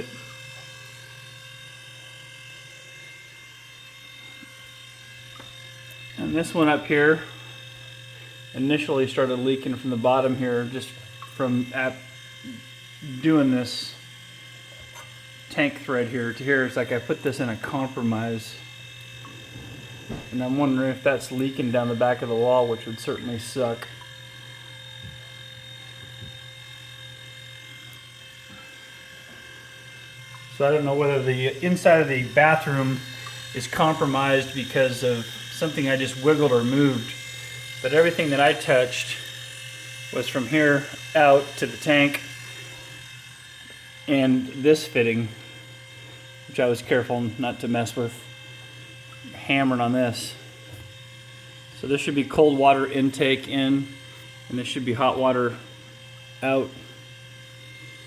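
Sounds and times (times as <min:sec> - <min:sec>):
steady low hum: 0:00.0 - 0:58.0
high-pitched whining tones: 0:14.7 - 0:58.0.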